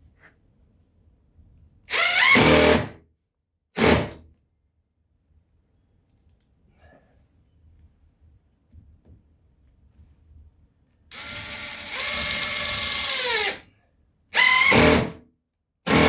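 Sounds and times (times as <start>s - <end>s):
power drill driving a screw: 1.9s - 2.9s, 11.1s - 13.6s, 14.4s - 15.2s.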